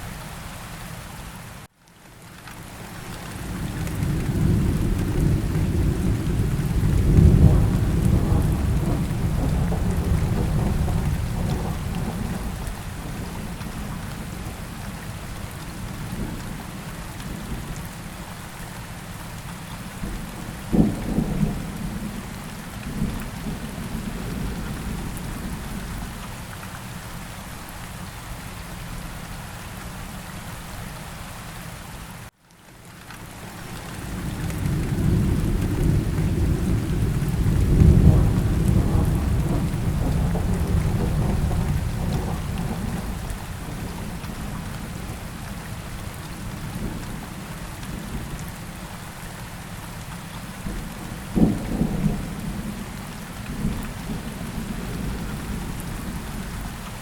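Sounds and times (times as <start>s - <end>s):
steady rain falling: 0.0s - 57.0s
thunder rolling: 3.5s - 14.3s, 34.0s - 45.2s
sharp thunderclap: 4.3s - 12.7s, 34.2s - 44.2s.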